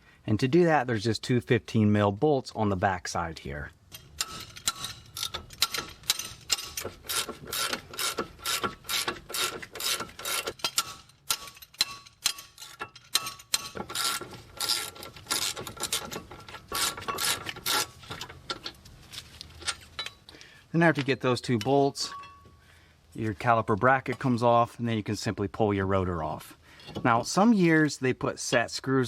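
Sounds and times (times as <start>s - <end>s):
ratchet wrench clicking: 4.2s - 16.1s.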